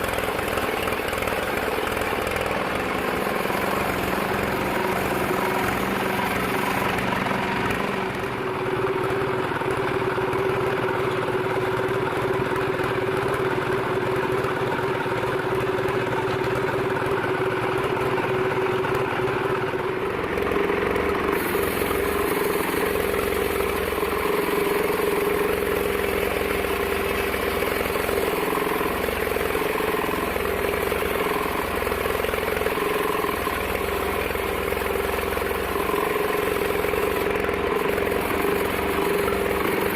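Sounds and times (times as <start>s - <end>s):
bandsaw running: 0.0s - 8.8s, 20.2s - 39.9s.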